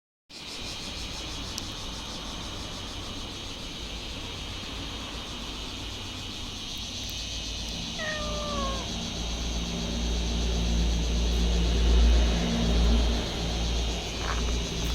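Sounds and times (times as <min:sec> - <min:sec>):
cat meowing: 0:07.9 - 0:09.0.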